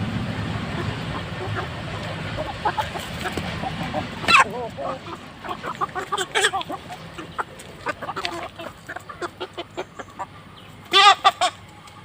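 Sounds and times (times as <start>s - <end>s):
chickens clucking: 0.6s - 12.0s
loud two-part chicken call: 10.9s - 11.6s.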